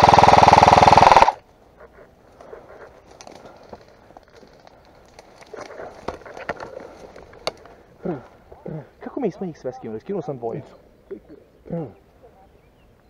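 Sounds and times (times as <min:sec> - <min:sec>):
airsoft rifle full-auto burst: 0:00.0 - 0:01.4
rustling: 0:01.4 - 0:08.8.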